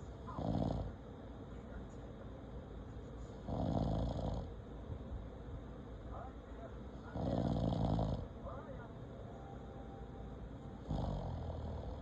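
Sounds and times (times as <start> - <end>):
loud snores: 0.4 - 0.9, 3.5 - 4.5, 7.2 - 8.3, 10.9 - 12.0.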